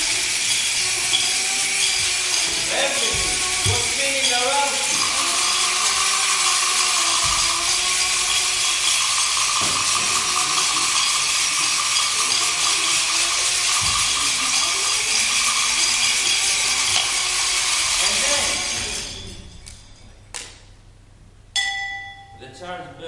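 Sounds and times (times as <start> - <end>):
faint held tone: 21.6 - 22.4.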